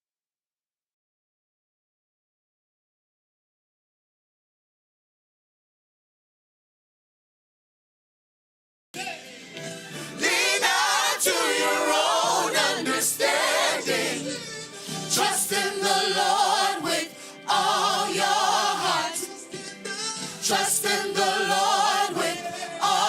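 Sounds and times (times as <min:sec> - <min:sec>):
musical backing: 0:09.0 - 0:23.0
choir singing: 0:10.0 - 0:23.0.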